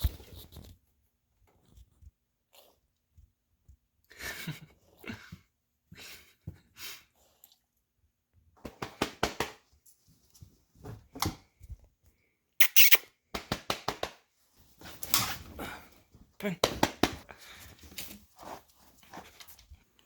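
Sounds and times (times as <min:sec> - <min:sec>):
dog making short noises: 0:12.6 - 0:13.0.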